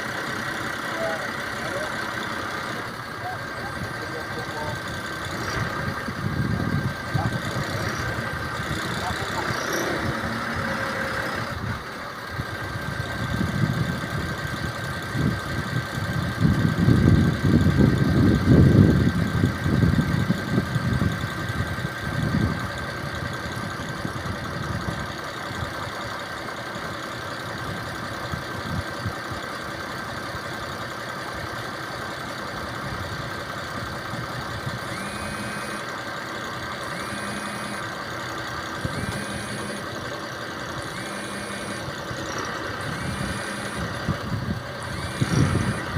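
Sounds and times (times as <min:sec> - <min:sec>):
motor whining: 0:00.0 - 0:13.9, 0:34.1 - 0:45.9
warning beep: 0:39.0 - 0:39.9, 0:41.0 - 0:44.0.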